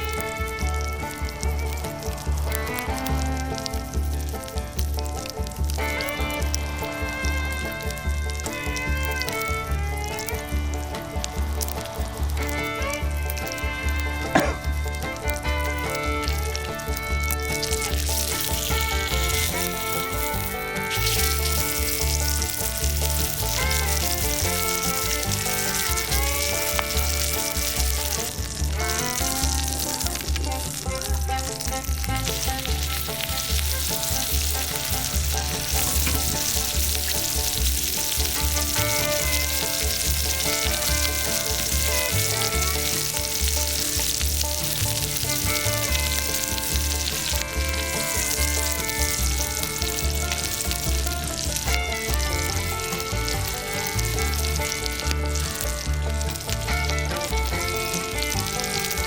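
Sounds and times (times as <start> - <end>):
food sizzling: 0.0 - 59.0.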